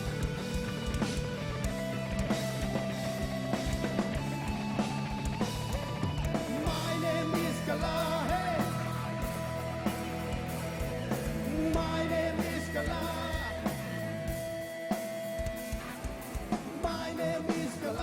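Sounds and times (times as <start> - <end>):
live rock band playing: 0.0 - 18.0
person singing: 6.5 - 9.4, 11.4 - 14.0, 16.8 - 18.0.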